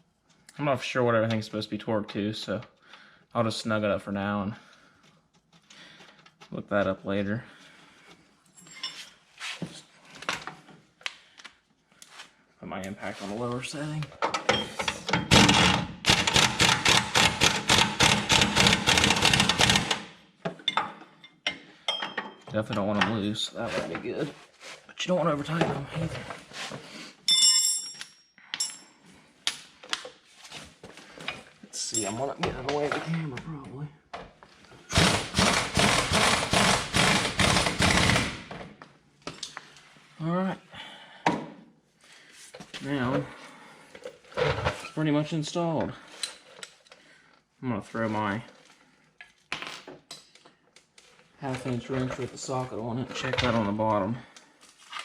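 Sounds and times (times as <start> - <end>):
impact wrench rattling: 15.1 - 20.1, 34.9 - 38.6.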